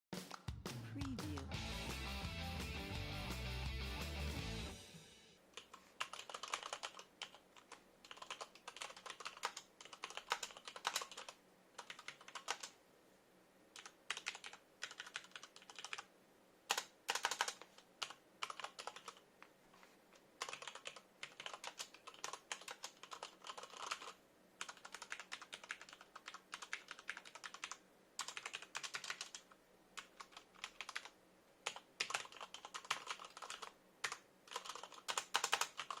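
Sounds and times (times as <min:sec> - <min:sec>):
mechanical keyboard typing: 0:05.6 - 0:12.8, 0:13.8 - 0:16.1, 0:16.7 - 0:19.2, 0:20.4 - 0:36.0.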